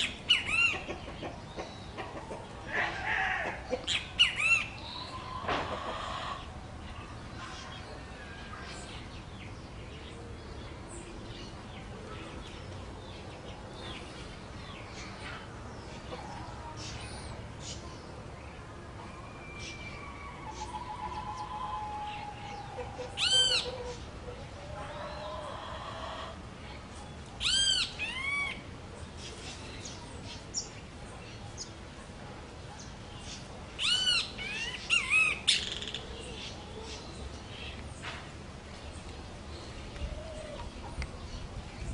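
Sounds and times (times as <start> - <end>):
small birds chirping: 0.0 - 2.9
low background noise: 0.0 - 41.9.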